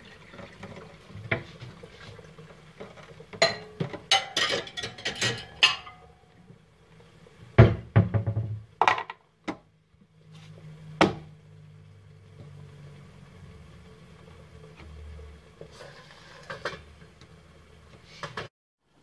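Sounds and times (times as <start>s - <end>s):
pots and pans clanking: 0.2s - 6.2s, 15.8s - 16.9s.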